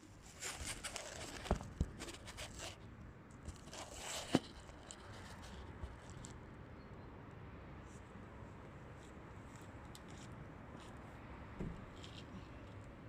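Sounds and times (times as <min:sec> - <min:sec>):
rustling and scraping: 0:00.0 - 0:06.4, 0:09.0 - 0:11.0, 0:11.6 - 0:12.9.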